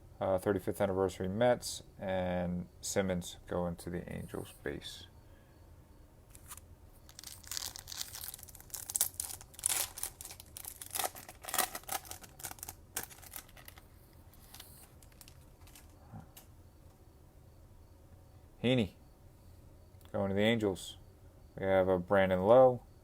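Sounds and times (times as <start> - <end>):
foil wrapper tearing and crinkling: 6.3 - 15.9
handling rustles: 6.3 - 16.0.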